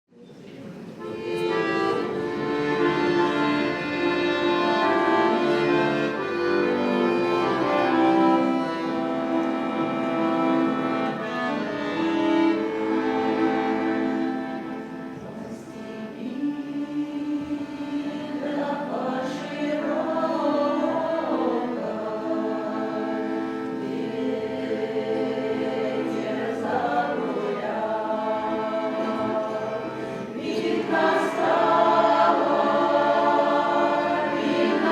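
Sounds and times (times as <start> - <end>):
accordion: 1.0 - 34.9
choir singing: 1.0 - 34.9.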